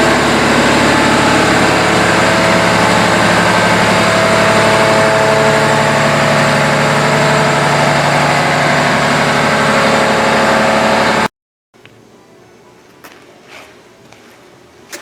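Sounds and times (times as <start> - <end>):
engine idling: 0.0 - 11.3.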